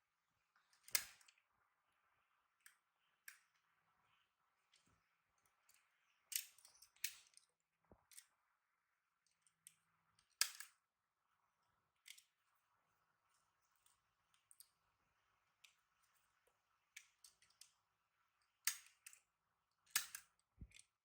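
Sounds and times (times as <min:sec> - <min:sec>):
faint sharp clicks and crinkles: 0:00.6 - 0:01.5, 0:02.5 - 0:08.5, 0:12.0 - 0:14.9, 0:15.6 - 0:21.0.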